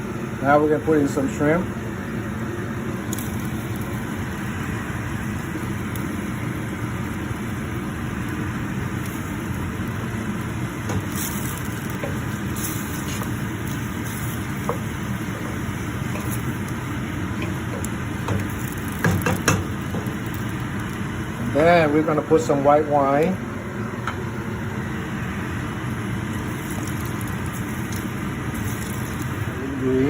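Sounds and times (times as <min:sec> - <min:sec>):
steady low hum: 0:00.0 - 0:30.0
shrimp sizzling in a pan: 0:02.6 - 0:21.7, 0:25.2 - 0:30.0.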